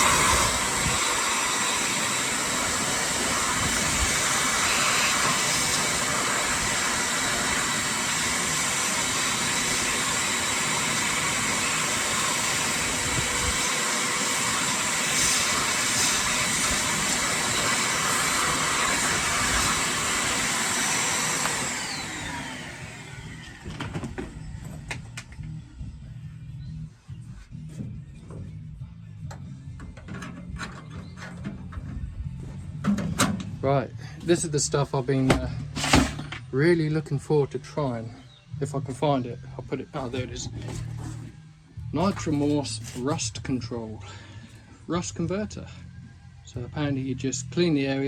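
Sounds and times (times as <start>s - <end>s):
power tool motor running: 0.0s - 25.0s
motor spinning down whine: 0.0s - 25.6s.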